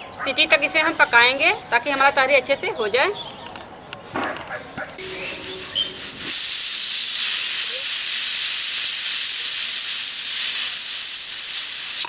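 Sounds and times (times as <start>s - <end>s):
pressure cooker whistle hissing: 5.0s - 12.0s.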